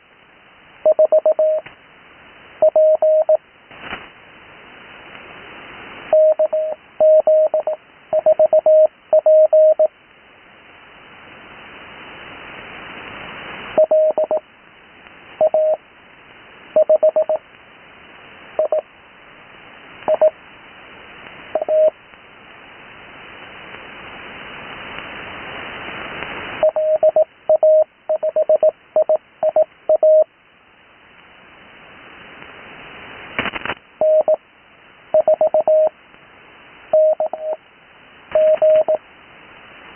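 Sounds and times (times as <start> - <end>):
morse code tone: 0.9 - 1.6, 2.6 - 3.4, 6.2 - 9.9, 13.8 - 14.4, 15.4 - 15.8, 16.8 - 17.4, 21.6 - 21.9, 26.6 - 30.2, 34.0 - 34.4, 35.2 - 35.9, 37.0 - 37.6, 38.4 - 39.0
radio band hiss: 10.6 - 27.6, 31.2 - 39.9.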